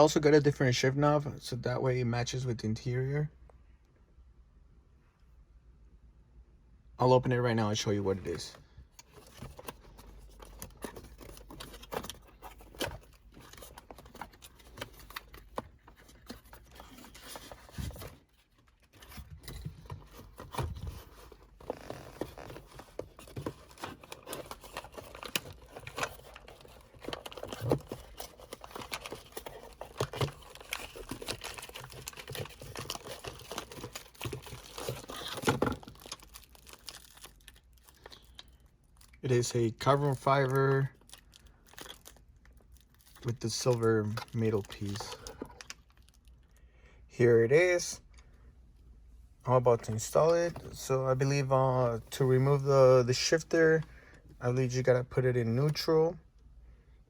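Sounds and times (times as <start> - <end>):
packaging tearing and crinkling: 20.3 - 39.2, 39.9 - 46.4.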